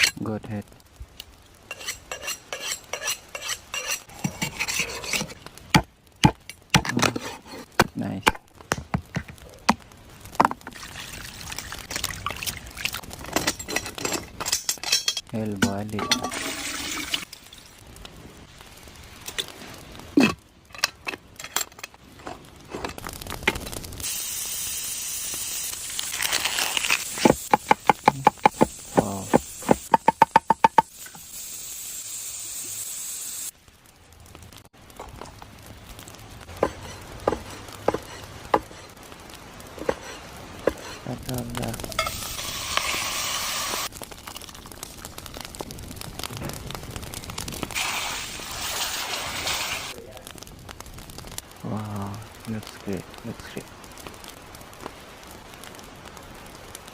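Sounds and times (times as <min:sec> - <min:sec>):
fire crackling and popping: 0:00.0 - 0:56.9
steady hiss: 0:23.2 - 0:33.9, 0:35.5 - 0:44.0, 0:46.0 - 0:56.9
cooking clicks and crackles: 0:34.2 - 0:51.6.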